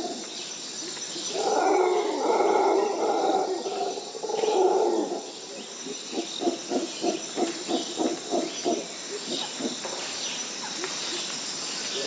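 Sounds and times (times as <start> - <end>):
high insect drone: 0.0 - 12.0
howler monkey roaring and grunting: 1.3 - 9.9.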